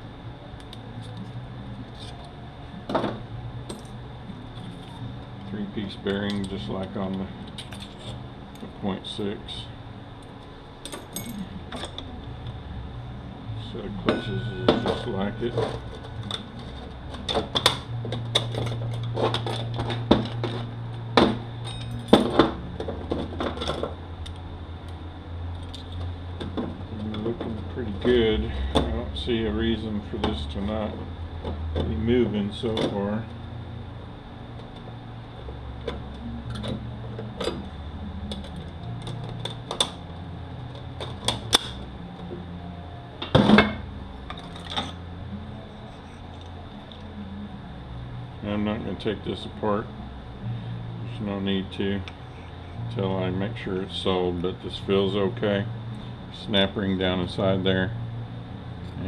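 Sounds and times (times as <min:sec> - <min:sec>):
steady low hum: 0:00.0 - 0:59.0
metal parts clinking and knocking: 0:10.8 - 0:12.0, 0:14.1 - 0:23.9, 0:43.3 - 0:45.0.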